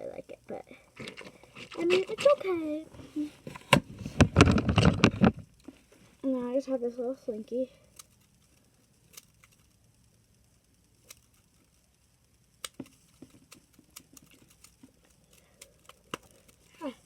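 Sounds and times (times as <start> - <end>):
slinky coils clicking: 7.4 - 17.0.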